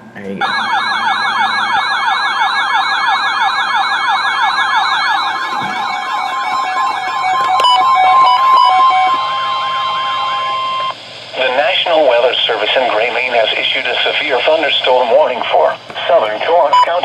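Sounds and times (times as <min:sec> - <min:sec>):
steady warning alarm tone: 0:00.4 - 0:14.8
fast warbling alert siren: 0:02.3 - 0:09.4.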